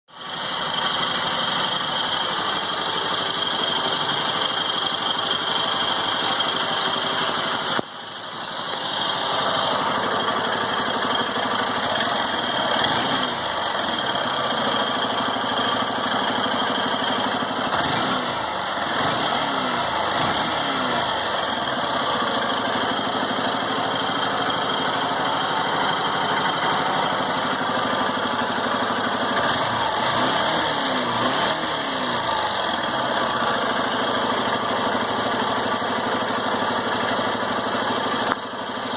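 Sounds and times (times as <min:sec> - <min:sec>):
motorcycle engine idling and revving: 0:00.1 - 0:38.9.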